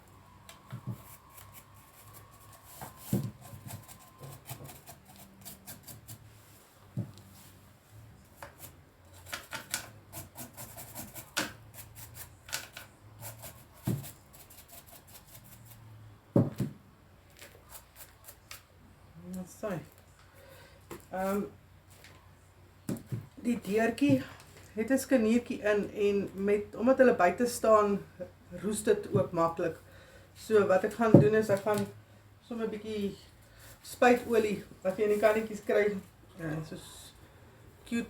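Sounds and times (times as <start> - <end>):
scratchy rubs: 0.9 - 6.4, 8.4 - 12.4, 13.2 - 15.9.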